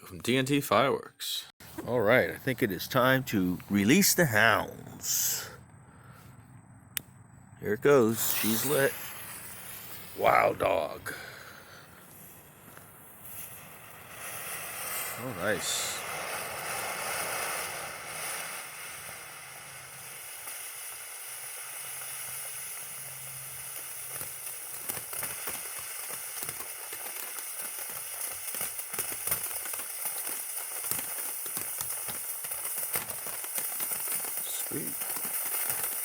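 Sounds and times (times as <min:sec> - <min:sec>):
firework fountain hissing: 0:01.6 - 0:06.3, 0:07.6 - 0:36.0
small ticks and pops: 0:21.7 - 0:36.0.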